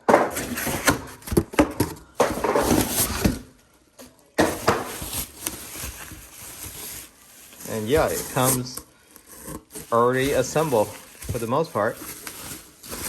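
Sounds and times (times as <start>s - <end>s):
packaging rustling: 4.4s - 13.0s.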